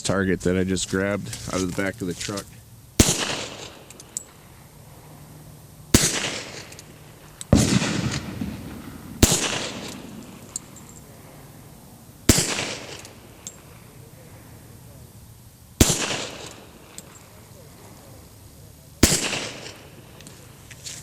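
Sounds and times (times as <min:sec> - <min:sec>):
pistol shots: 0:03.0 - 0:04.5, 0:05.9 - 0:11.6, 0:12.2 - 0:14.0, 0:15.8 - 0:17.5, 0:19.0 - 0:20.6.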